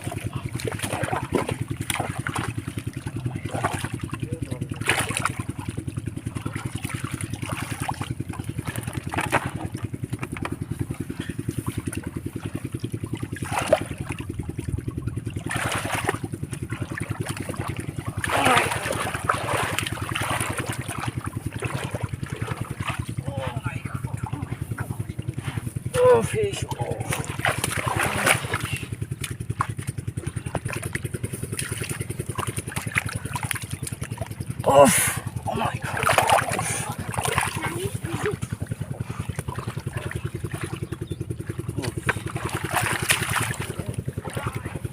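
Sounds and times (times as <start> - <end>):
small engine putter: 0.0 - 23.8, 24.5 - 44.9
splashing: 0.0 - 44.9.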